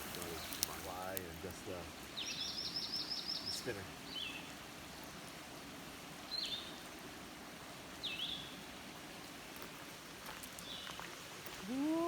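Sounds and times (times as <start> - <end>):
creek rushing: 0.0 - 12.0.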